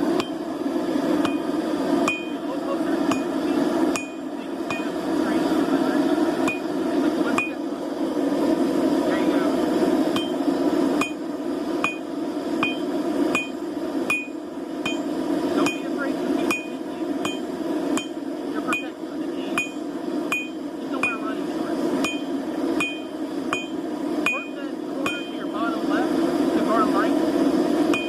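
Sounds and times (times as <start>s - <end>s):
hammer striking steel on anvil: 0.2s - 0.4s, 1.2s - 1.4s, 2.1s - 2.4s, 3.1s - 3.3s, 3.9s - 5.0s, 6.4s - 6.7s, 10.2s - 10.4s, 11.0s - 11.2s, 11.8s - 12.0s, 12.6s - 15.9s, 16.5s - 18.9s, 19.6s - 21.2s, 22.0s - 25.3s.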